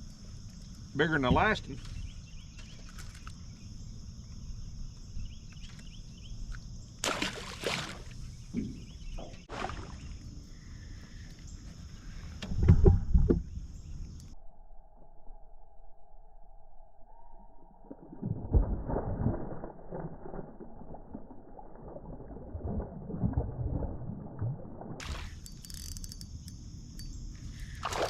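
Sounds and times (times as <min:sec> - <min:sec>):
water and wind against hull: 0:04.6 - 0:14.3, 0:21.9 - 0:28.0
water splash: 0:07.0 - 0:08.2, 0:09.4 - 0:10.2, 0:17.9 - 0:25.4, 0:27.8 - 0:28.0.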